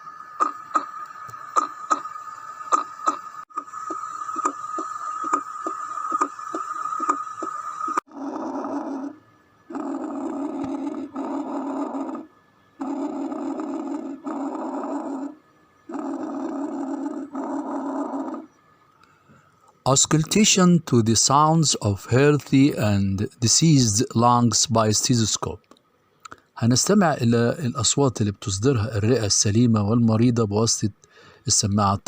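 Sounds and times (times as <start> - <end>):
breathing through stethoscope: 31.0 - 31.5.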